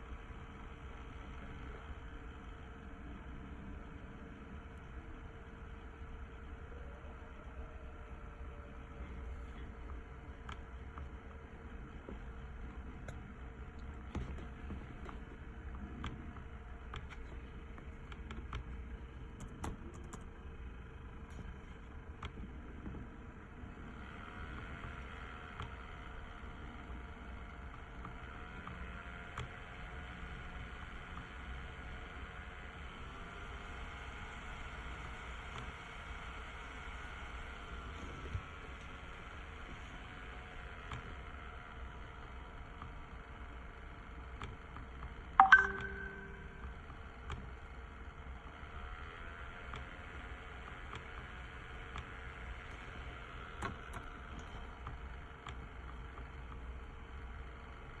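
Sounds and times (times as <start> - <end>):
low hum and rumble: 0.0 - 45.1
electronic beep: 45.4 - 46.7
low hum: 45.4 - 46.8
faint steady tones: 45.4 - 47.0.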